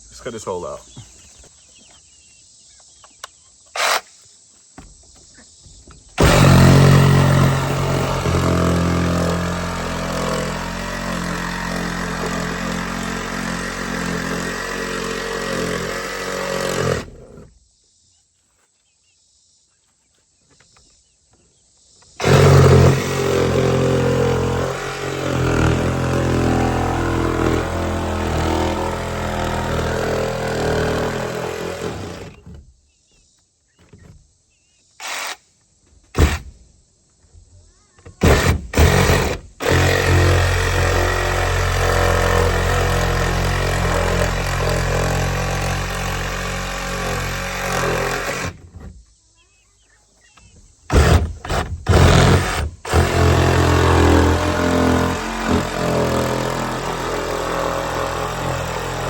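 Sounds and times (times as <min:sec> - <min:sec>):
power saw cutting: 0:06.2 - 0:17.5, 0:22.2 - 0:32.6, 0:38.2 - 0:48.9, 0:50.9 - 0:59.0.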